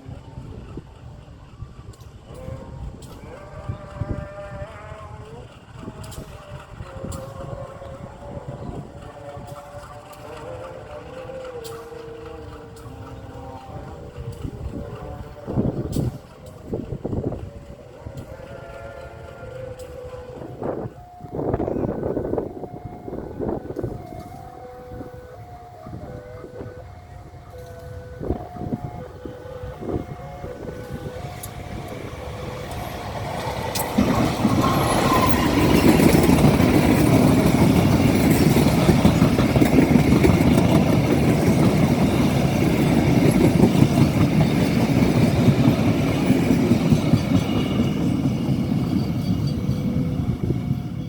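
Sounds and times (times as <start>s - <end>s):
locomotive engine rumble: 0.0s - 51.0s
train wheels rolling: 0.0s - 51.0s
train horn blasts: 2.2s - 39.4s.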